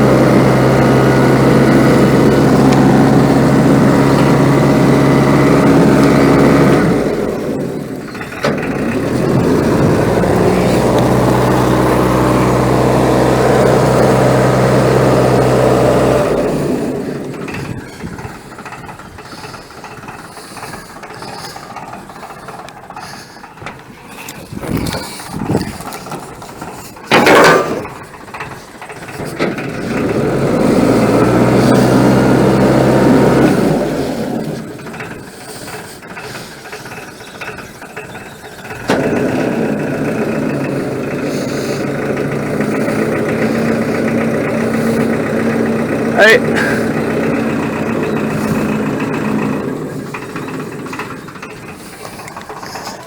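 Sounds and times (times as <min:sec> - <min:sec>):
boat engine running: 0:00.0 - 0:53.0.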